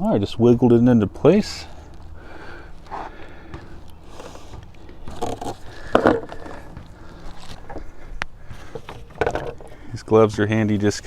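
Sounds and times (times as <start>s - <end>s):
plastic tubing scraping and rustling: 1.4s - 11.0s
loud plastic clack: 8.6s - 9.9s.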